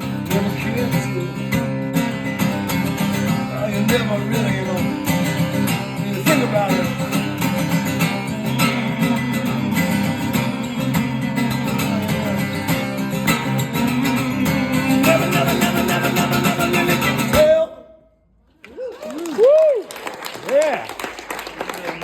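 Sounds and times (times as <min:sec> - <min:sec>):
acoustic guitar strumming: 0:00.0 - 0:18.1.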